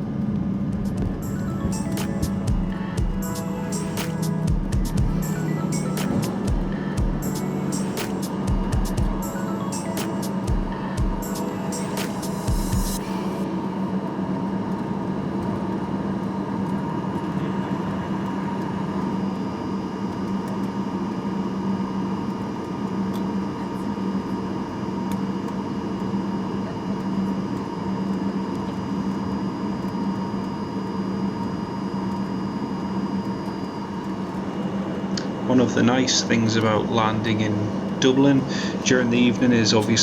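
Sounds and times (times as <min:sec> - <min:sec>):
aircraft cabin drone: 0:00.0 - 0:40.0.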